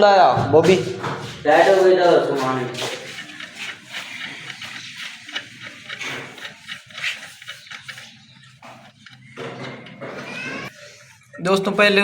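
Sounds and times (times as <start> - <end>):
scraping and rubbing on tyre: 0.7 - 9.4.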